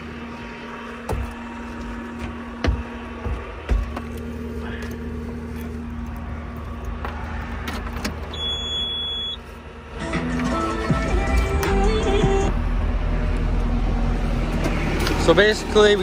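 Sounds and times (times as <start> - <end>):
diesel engine idling: 0.0 - 16.0
background music: 10.0 - 12.6.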